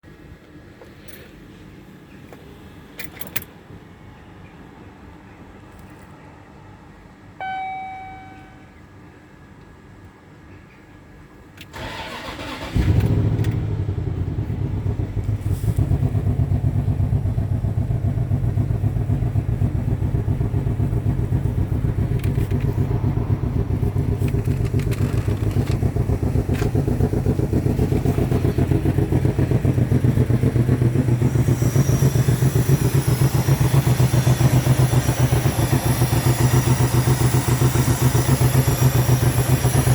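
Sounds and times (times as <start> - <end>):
dashboard chime: 7.4 - 8.7
starter cranking engine: 11.7 - 13.9, 21.1 - 29.7, 30.7 - 39.9
car engine idling with misfire: 11.8 - 39.9.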